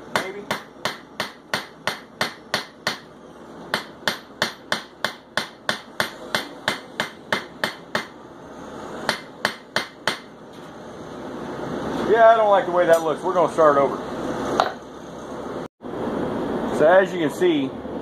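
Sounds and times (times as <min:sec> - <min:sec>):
hammer striking hot metal on anvil: 0:00.1 - 0:03.1, 0:03.7 - 0:08.2, 0:09.1 - 0:10.3.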